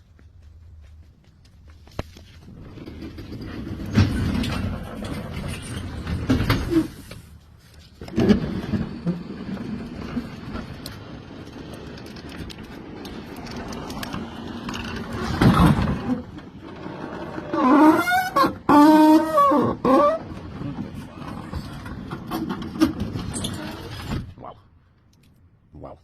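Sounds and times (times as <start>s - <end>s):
garage door opener rumbling: 2.6s - 7.1s, 8.0s - 24.3s.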